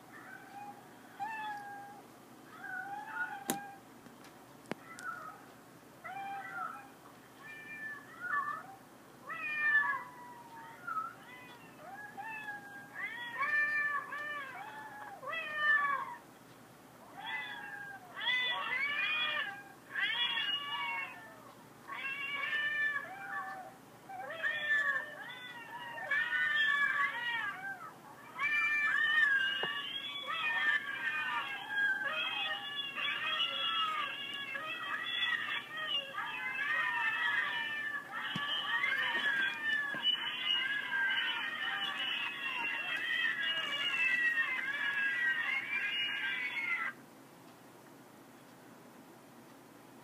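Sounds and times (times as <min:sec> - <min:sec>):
recorded cat meows: 0:00.2 - 0:03.8.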